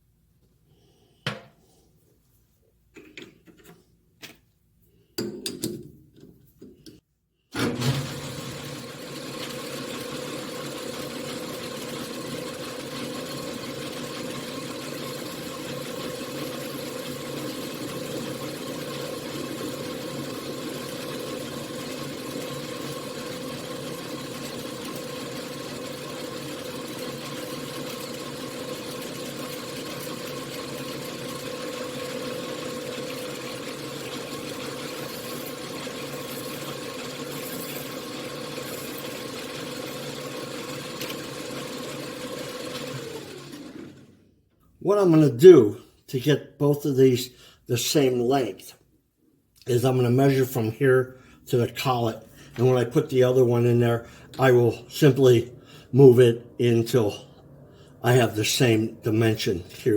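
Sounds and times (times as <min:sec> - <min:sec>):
lathe running with hum: 0:07.6 - 0:44.1.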